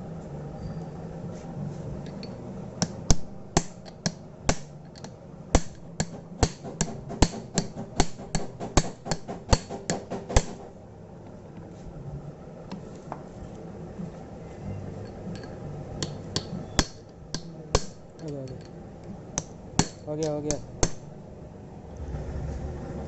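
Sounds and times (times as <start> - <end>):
low steady hum: 0.0 - 23.0
hammer striking metal: 2.8 - 10.7, 15.4 - 18.0, 19.4 - 21.1.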